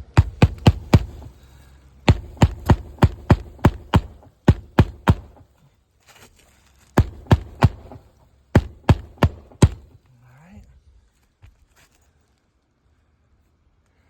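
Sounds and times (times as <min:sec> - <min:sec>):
hammer driving roofing nails: 0:00.0 - 0:05.5, 0:07.0 - 0:10.0.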